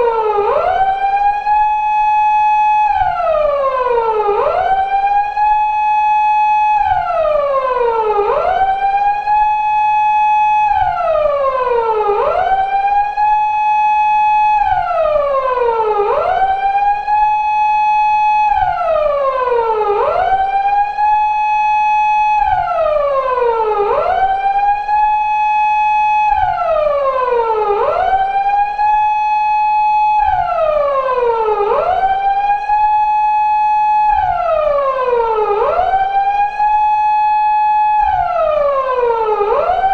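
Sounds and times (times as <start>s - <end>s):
police car siren wailing: 0.0s - 39.9s.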